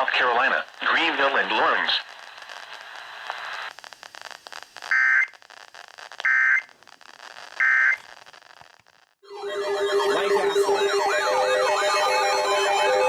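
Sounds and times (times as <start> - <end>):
radio hiss and crackle: 0.0 - 9.2.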